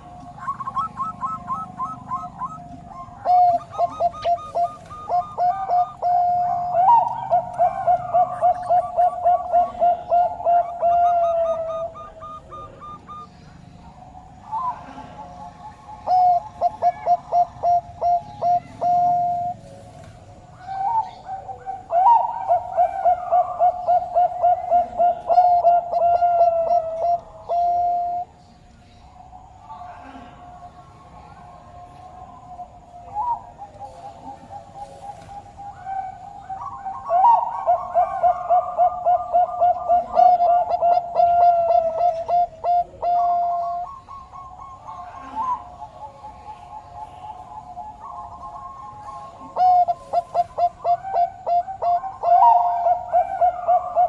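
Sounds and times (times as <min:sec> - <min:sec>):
turtledove cooing: 0:00.0 - 0:19.8, 0:29.6 - 0:54.0.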